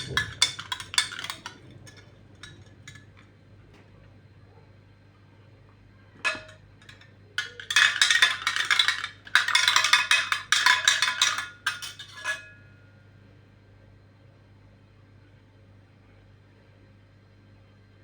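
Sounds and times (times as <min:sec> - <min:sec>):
metal utensil clinking on dish: 0:00.0 - 0:03.2, 0:06.3 - 0:12.6.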